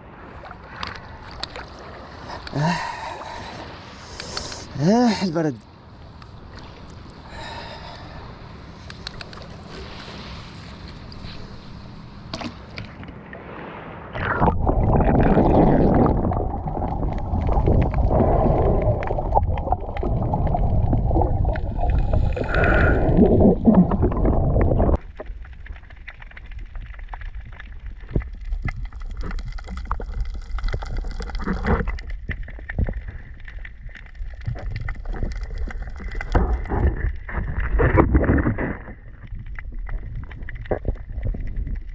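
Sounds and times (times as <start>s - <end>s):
sea water sloshing and gurgling: 0.0s - 41.9s.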